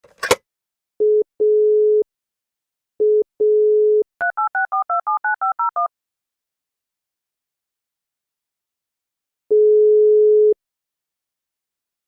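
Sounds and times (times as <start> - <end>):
keypad dialing tones: 3.0 - 5.9.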